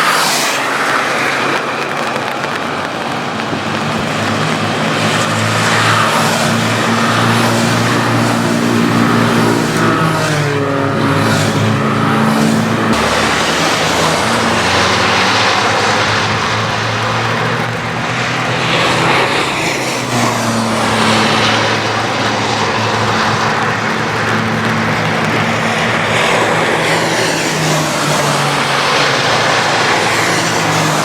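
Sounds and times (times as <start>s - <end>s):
hiss of spray from wet track: 0.0s - 2.2s, 12.9s - 24.0s
race car engines: 0.0s - 31.0s.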